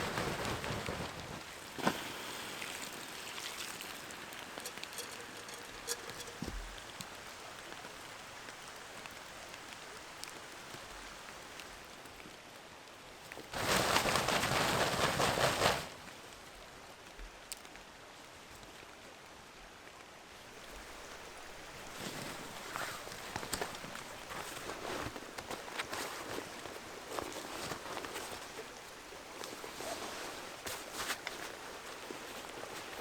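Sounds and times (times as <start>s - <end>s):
dense loud rain patter: 0.0s - 33.0s
light rain pattering: 0.0s - 33.0s
water drips: 1.8s - 12.2s.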